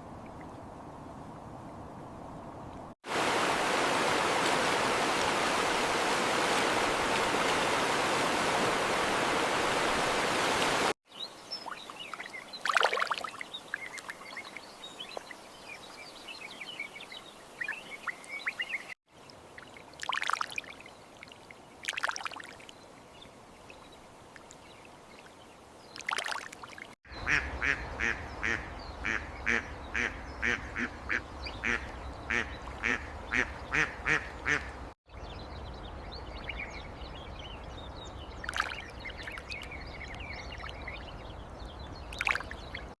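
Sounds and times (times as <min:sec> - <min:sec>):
duck quacking: 0:27.2 - 0:34.8.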